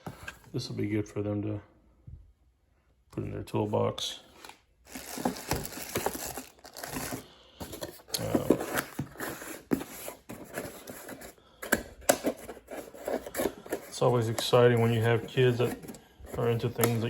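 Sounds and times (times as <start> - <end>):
packaging rustling and crinkling: 4.4 - 17.0.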